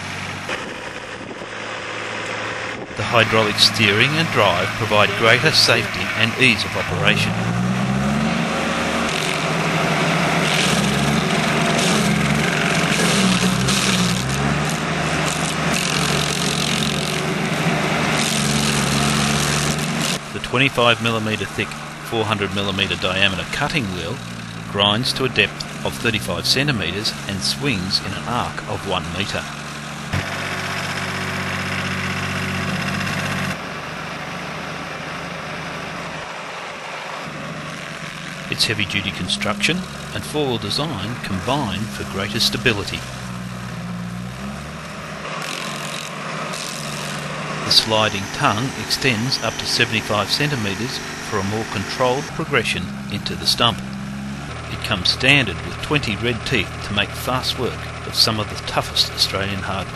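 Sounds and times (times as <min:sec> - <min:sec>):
diesel engine under load: 0:00.0 - 0:59.9
wheel grinding into stump: 0:07.3 - 0:20.2.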